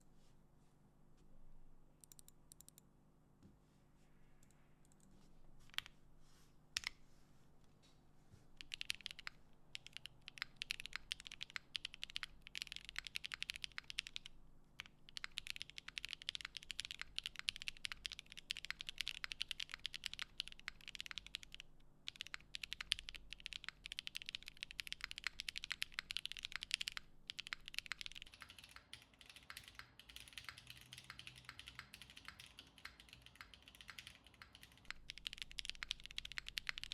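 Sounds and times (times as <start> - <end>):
mechanical keyboard typing: 8.6 - 36.9.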